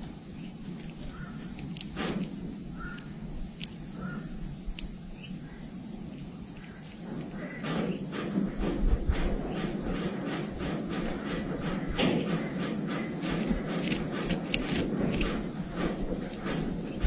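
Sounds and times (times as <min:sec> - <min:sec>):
bird calls: 0:00.0 - 0:17.0
sharp clicks: 0:00.0 - 0:17.0
rustling: 0:06.2 - 0:17.0.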